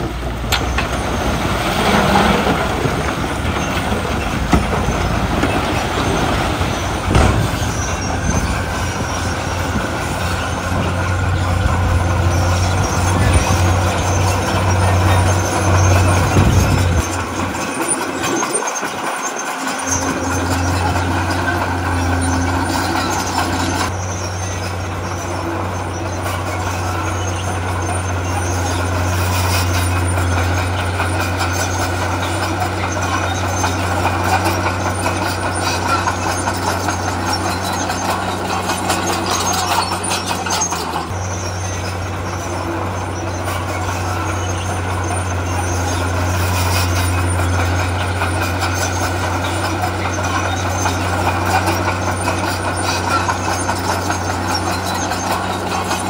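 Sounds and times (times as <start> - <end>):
heavy diesel machinery running: 0.0 - 56.0.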